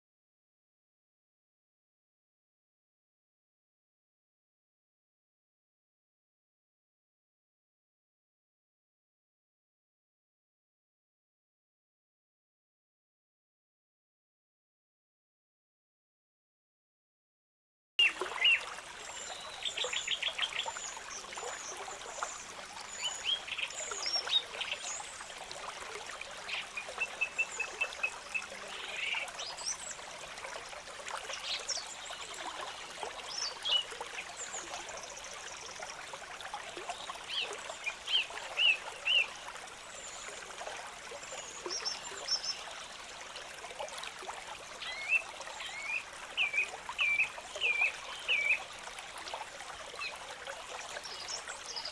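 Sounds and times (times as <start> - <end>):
stream trickling: 18.0 - 51.9.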